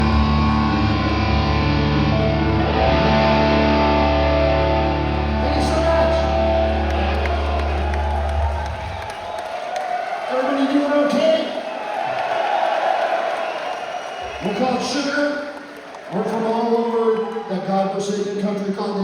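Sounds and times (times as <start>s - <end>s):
live rock music: 0.0s - 8.2s
bass guitar: 0.0s - 9.0s
electric guitars: 0.0s - 9.1s.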